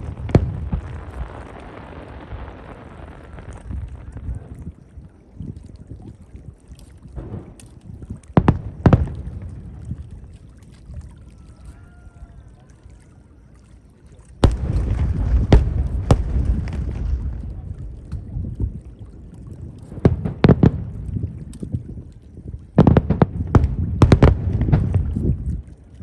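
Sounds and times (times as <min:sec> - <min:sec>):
fireworks booming and crackling: 0:00.0 - 0:05.5, 0:07.2 - 0:10.3, 0:14.4 - 0:25.8.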